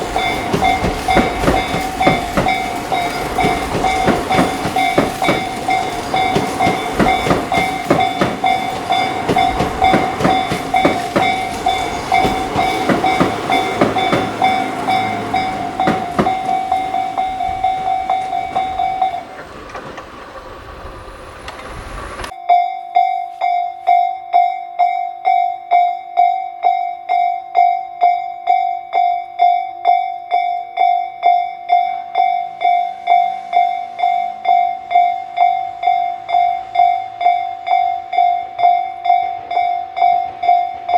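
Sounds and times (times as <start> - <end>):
electric train clattering: 0.0 - 22.4, 31.0 - 40.9
crossing warning bell dinging: 0.0 - 40.9.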